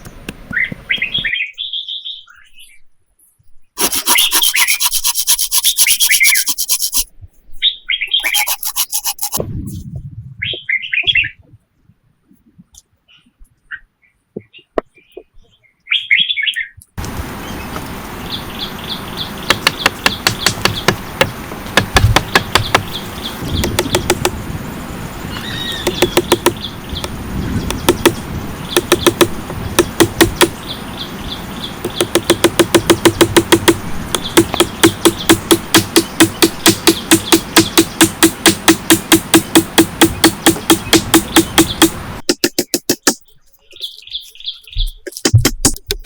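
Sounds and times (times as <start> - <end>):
birds chirping: 0.0 - 2.8, 3.9 - 7.0, 13.1 - 45.2
rapid sharp knocks: 3.8 - 7.1, 8.3 - 9.4, 19.5 - 24.4, 25.8 - 30.6, 31.8 - 43.2, 45.2 - 46.0
steady hiss: 17.0 - 43.0.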